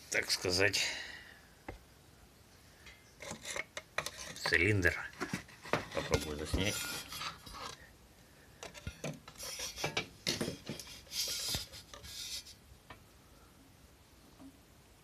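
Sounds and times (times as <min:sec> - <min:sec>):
handling rubbing and scraping: 0:03.2 - 0:07.9, 0:08.6 - 0:12.6.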